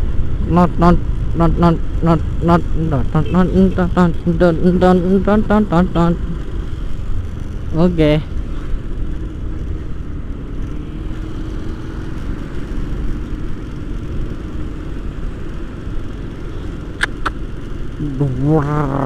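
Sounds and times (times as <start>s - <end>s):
motorcycle engine and road noise: 0.0s - 19.0s
person speaking: 0.4s - 6.4s, 18.0s - 19.0s
sharp clicks: 17.0s - 17.4s.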